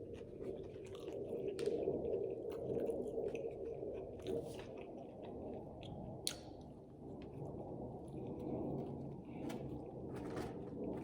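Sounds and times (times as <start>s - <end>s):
person chewing food: 0.0s - 5.9s
moist mouth smacks and clicks: 0.8s - 6.6s.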